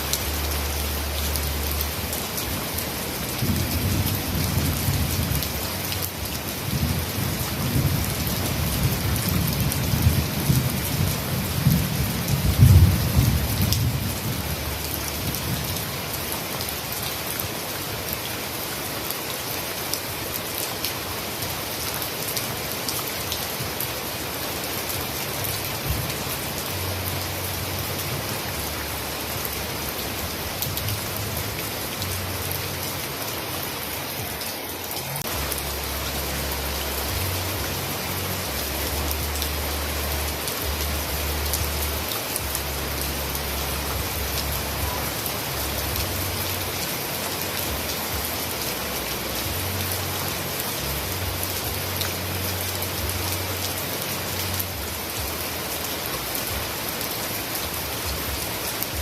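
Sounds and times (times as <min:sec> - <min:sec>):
heavy rain: 0:00.0 - 0:59.0
rolling thunder: 0:06.7 - 0:14.5.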